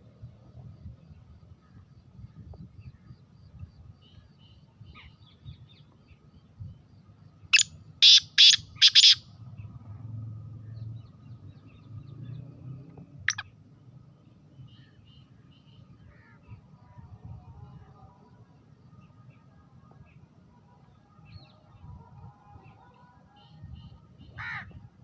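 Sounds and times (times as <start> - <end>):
faint small bird chirps: 7.5 - 9.2
bird calling harsh notes: 7.6 - 9.2.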